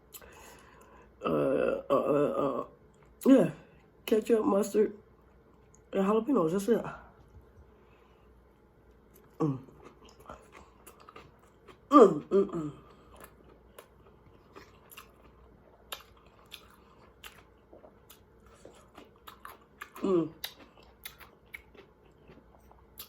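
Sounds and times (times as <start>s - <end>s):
man chewing food: 0.0s - 1.2s, 5.1s - 5.9s, 7.1s - 23.0s.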